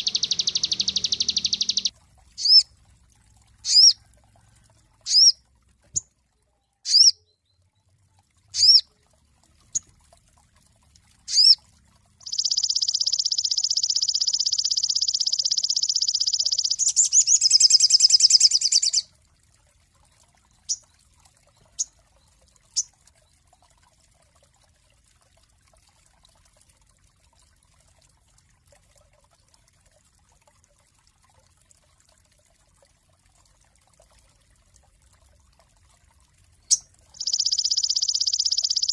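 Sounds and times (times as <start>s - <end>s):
bird buzzing trill: 0.0s - 2.6s, 37.2s - 38.9s
bird chirping: 0.0s - 2.6s, 3.7s - 4.0s, 6.8s - 7.6s, 11.3s - 11.6s, 12.2s - 19.0s, 36.7s - 38.9s.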